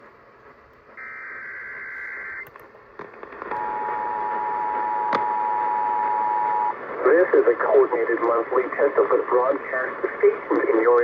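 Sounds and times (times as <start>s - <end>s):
radio static hiss: 0.0s - 11.0s
static crackle: 0.0s - 11.0s
two-tone attention signal: 3.6s - 6.7s.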